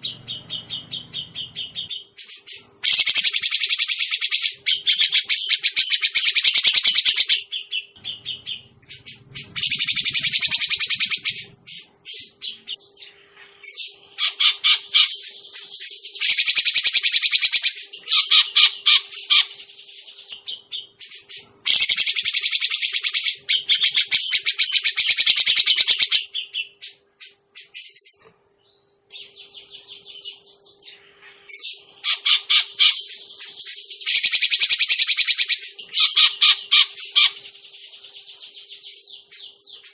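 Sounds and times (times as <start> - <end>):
bird harsh chattering: 0.0 - 12.8, 14.2 - 15.3, 16.1 - 19.7, 20.5 - 27.9, 31.5 - 37.6
faint steady hum: 0.0 - 39.9.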